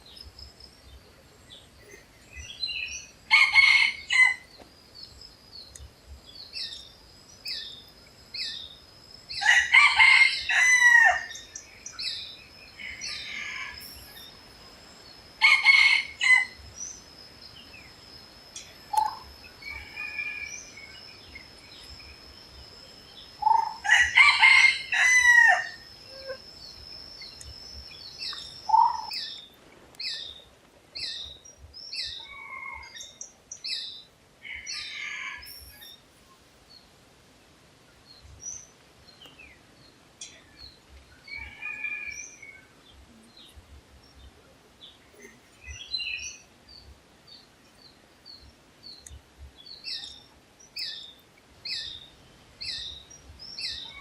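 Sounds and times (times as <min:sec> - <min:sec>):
small birds chirping: 0:00.0 - 0:54.0
junglefowl crowing: 0:03.3 - 0:04.5, 0:09.4 - 0:11.4, 0:15.4 - 0:16.6, 0:23.4 - 0:26.4, 0:41.3 - 0:42.3.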